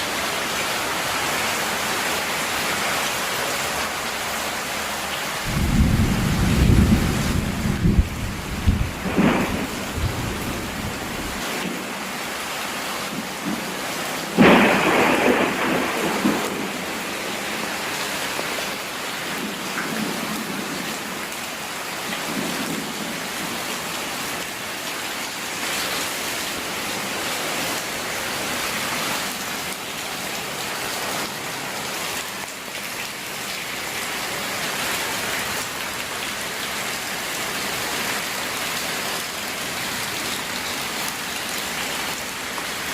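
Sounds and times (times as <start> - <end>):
heavy rain falling: 0.0 - 42.9
thunder rumbling: 5.4 - 12.0, 13.1 - 17.6
loud thunderclap: 5.5 - 11.9, 14.4 - 17.1.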